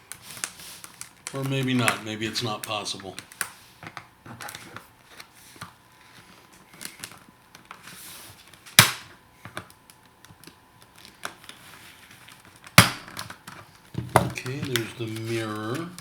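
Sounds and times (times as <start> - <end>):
loud sharp plastic snap: 8.8 - 9.1
plastic scraping: 13.2 - 16.0.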